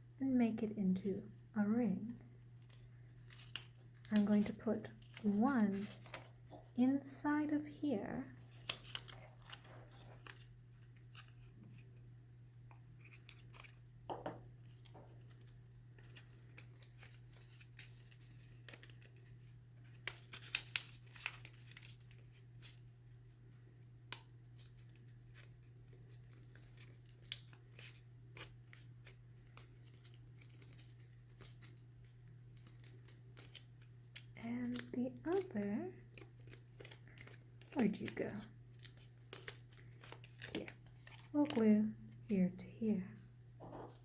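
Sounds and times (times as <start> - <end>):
low steady hum: 0.0 - 44.0
paper rustling: 2.6 - 6.8, 8.4 - 11.9, 13.0 - 13.8, 14.6 - 22.9, 24.5 - 41.6.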